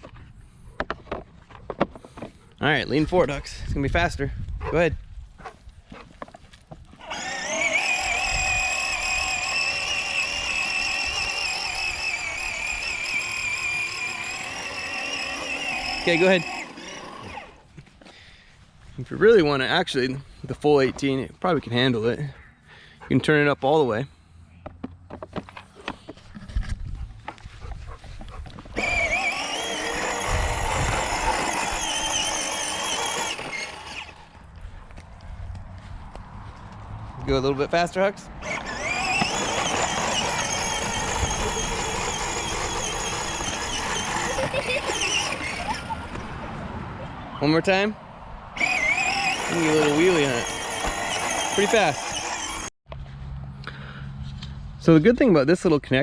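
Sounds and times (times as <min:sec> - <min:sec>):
toy electric motor whine: 0:07.0 - 0:17.6, 0:28.8 - 0:34.2, 0:38.4 - 0:46.2, 0:48.6 - 0:52.7.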